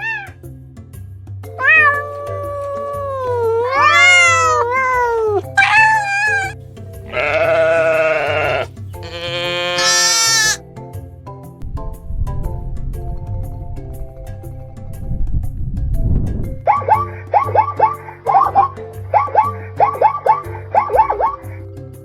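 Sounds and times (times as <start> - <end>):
animal calls: 0.0 - 0.4, 1.6 - 10.6, 16.7 - 21.6
background music: 0.0 - 22.0.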